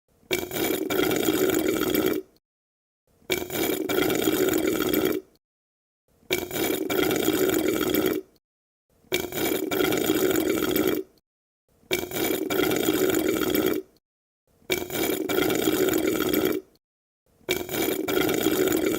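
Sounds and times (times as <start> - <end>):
sucking through a straw: 0.1 - 2.4, 3.1 - 5.4, 6.2 - 8.4, 9.1 - 11.2, 11.9 - 14.0, 14.6 - 16.8, 17.4 - 18.9.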